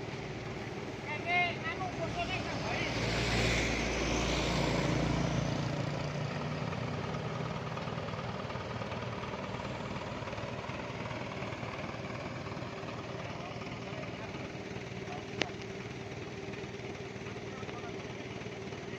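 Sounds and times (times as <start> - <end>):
heavy vehicle engine hum: 0.0 - 18.9
road noise: 0.0 - 18.9.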